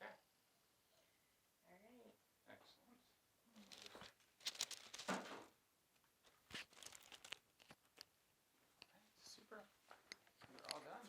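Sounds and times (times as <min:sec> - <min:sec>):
rustling and crinkling: 0:03.6 - 0:11.0.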